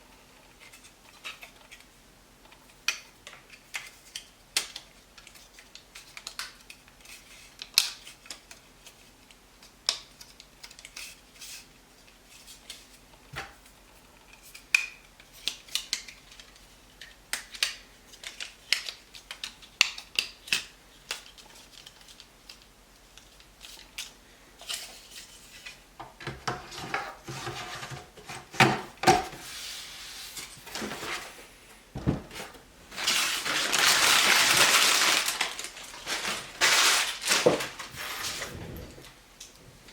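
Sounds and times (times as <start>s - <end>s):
rubbing or rustling: 26.6s - 39.2s.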